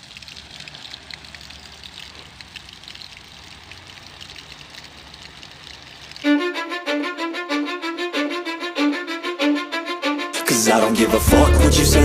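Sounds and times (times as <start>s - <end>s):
sprinkler water spraying: 0.0s - 8.3s.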